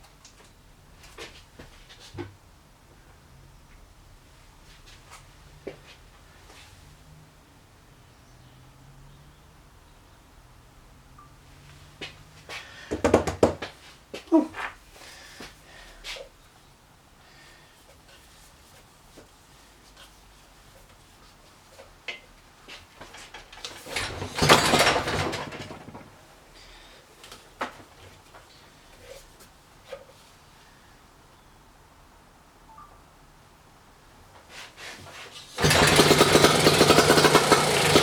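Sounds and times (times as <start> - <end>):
objects clattering and rustling: 22.7 - 26.2.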